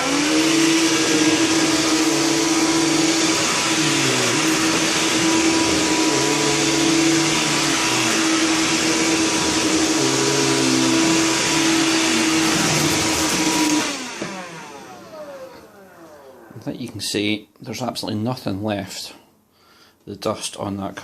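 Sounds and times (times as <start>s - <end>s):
vacuum cleaner running on carpet: 0.0s - 16.6s.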